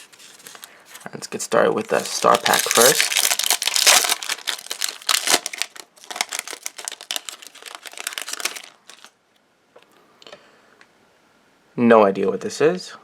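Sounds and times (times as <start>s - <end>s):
plastic wrapper crinkling: 0.0s - 1.1s, 1.8s - 9.2s.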